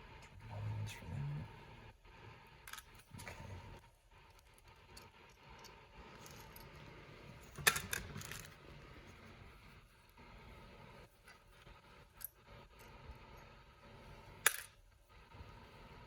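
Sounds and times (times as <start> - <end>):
small metal parts clinking: 4.4 - 6.8, 7.5 - 8.6, 14.4 - 14.8.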